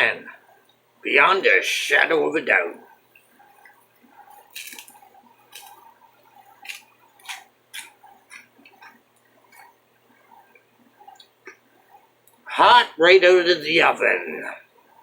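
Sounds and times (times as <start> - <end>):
person chewing: 3.2 - 11.7.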